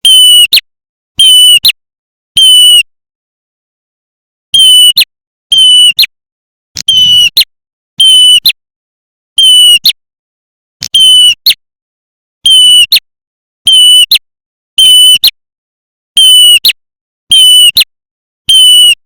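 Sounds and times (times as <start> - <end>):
distorted recorded bird call: 0.0 - 0.6, 1.2 - 1.8, 2.4 - 2.9, 4.6 - 6.1, 6.8 - 8.6, 9.4 - 10.0, 10.8 - 11.6, 12.4 - 13.0, 13.7 - 14.2, 14.8 - 15.3, 16.2 - 19.0.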